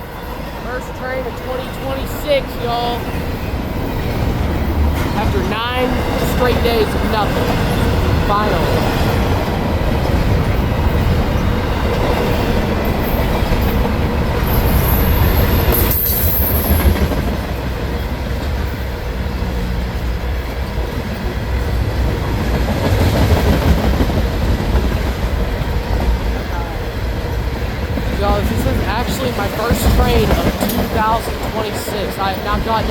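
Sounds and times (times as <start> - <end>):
train wheels rumbling on rail: 0.0 - 32.9
high wheel squeal: 14.4 - 16.9.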